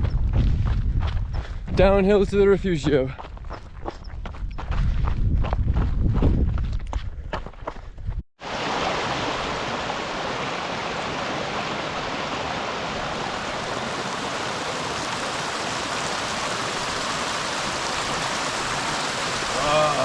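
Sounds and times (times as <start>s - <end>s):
footsteps on a trail: 0.0s - 8.2s
stream water rushing: 8.4s - 20.0s.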